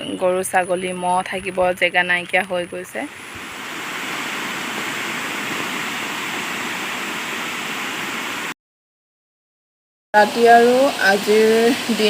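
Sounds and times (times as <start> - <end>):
flowing water rushing: 3.0 - 8.6, 10.2 - 12.0.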